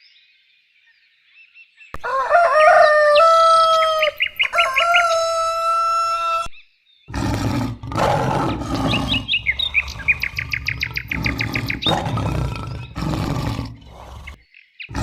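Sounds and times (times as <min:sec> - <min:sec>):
rooster crowing: 0:02.0 - 0:06.5.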